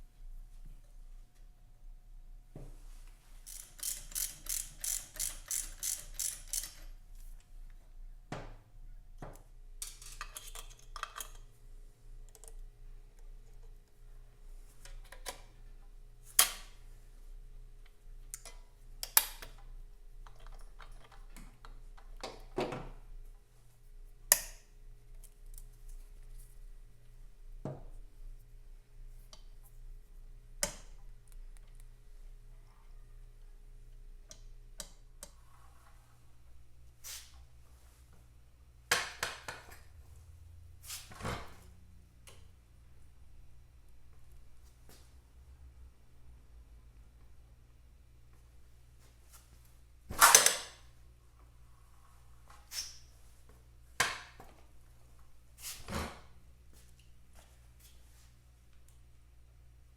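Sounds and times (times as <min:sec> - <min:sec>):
ratchet spanner clicking: 0:03.4 - 0:06.9.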